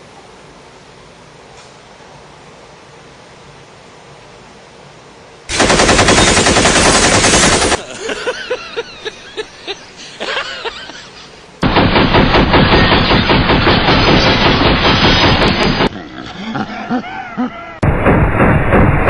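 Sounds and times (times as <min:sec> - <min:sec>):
automatic gunfire bursts: 0:05.5 - 0:07.9, 0:11.6 - 0:15.9
sharp gunshot cracks: 0:11.6 - 0:15.9, 0:17.8 - 0:19.0.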